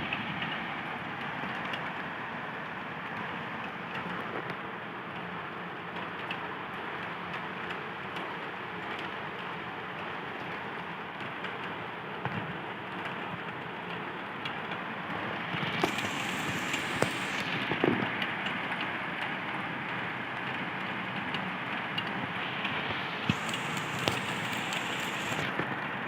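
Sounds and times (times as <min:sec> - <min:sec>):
heavy rain pouring: 0:15.0 - 0:26.0
bright high hiss: 0:15.8 - 0:17.7, 0:22.3 - 0:25.6.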